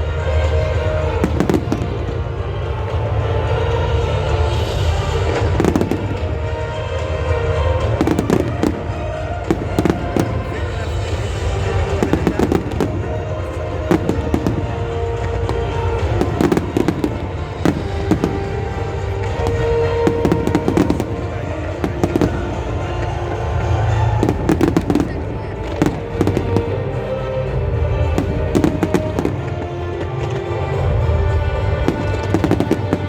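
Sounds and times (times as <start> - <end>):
fireworks bursting and crackling: 0.0 - 33.0.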